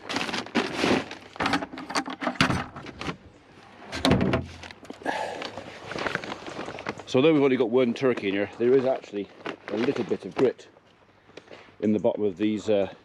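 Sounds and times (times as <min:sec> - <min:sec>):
feed containers clattering: 0:00.1 - 0:03.1.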